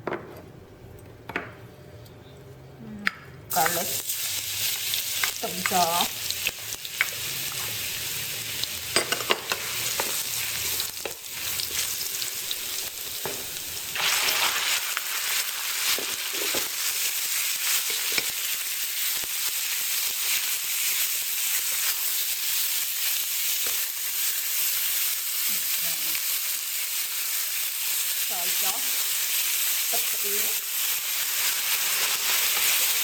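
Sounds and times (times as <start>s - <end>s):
garlic sizzling in oil: 3.5s - 33.0s.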